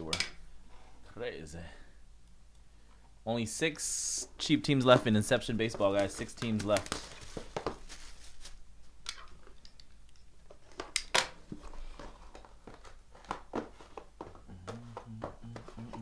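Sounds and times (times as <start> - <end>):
packaging rustling and crinkling: 4.9 - 9.3, 10.5 - 14.2.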